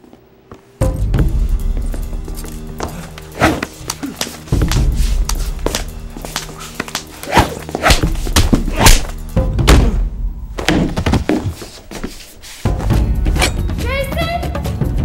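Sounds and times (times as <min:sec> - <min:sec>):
dramatic music with low drone: 0:00.8 - 0:10.7
sharp foley thuds and knocks: 0:07.3 - 0:11.7.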